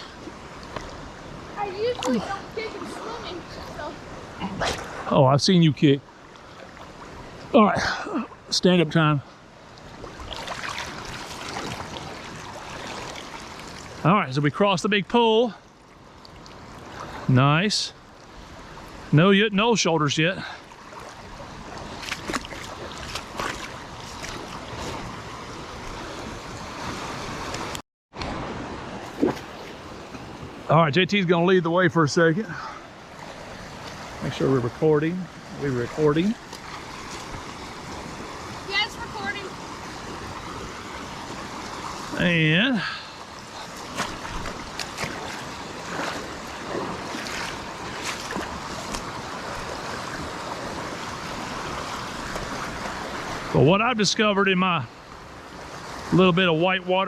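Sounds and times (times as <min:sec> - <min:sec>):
river water rushing: 0:00.0 - 0:57.0
sharp splashes of wading: 0:09.6 - 0:14.1, 0:19.8 - 0:30.7, 0:32.6 - 0:54.0.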